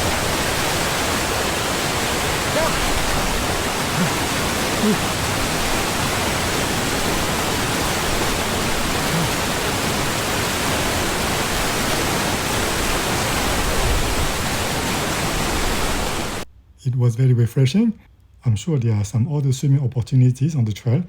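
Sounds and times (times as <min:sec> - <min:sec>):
water rushing over waterfall: 0:00.0 - 0:16.5.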